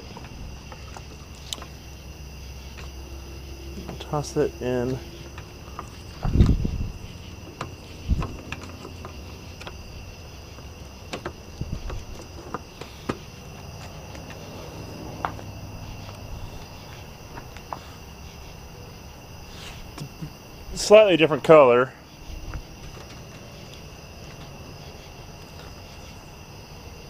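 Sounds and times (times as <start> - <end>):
heavier thump: 6.2 - 7.0.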